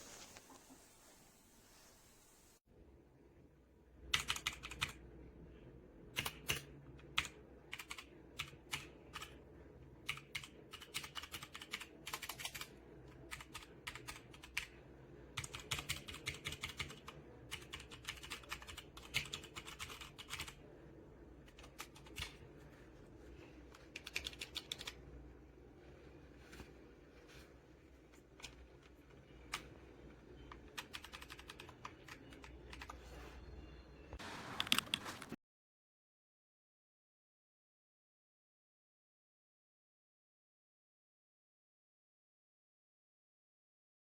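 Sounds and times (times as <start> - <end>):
typing on computer keyboard: 4.1 - 5.0, 6.2 - 9.4, 10.0 - 14.8, 15.4 - 20.6, 21.5 - 22.4, 23.9 - 25.0, 30.5 - 33.0.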